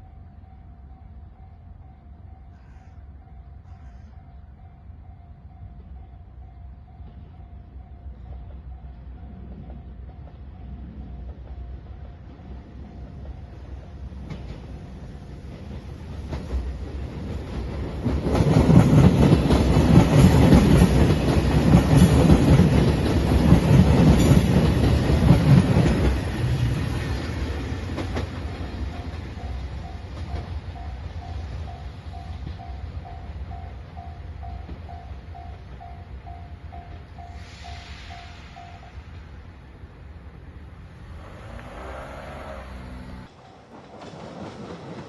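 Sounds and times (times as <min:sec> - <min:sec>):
train wheels clattering over rails: 0:09.4 - 0:31.2, 0:41.2 - 0:45.0
crossing bell ringing: 0:28.8 - 0:39.1, 0:42.2 - 0:44.4.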